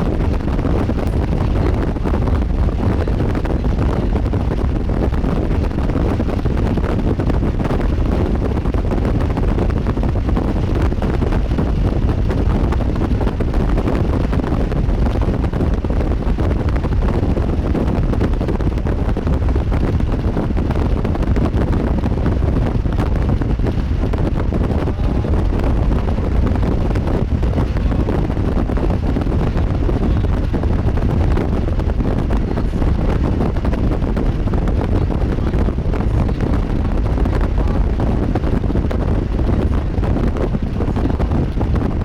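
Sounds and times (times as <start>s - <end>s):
wind buffeting microphone: 0.0s - 42.0s.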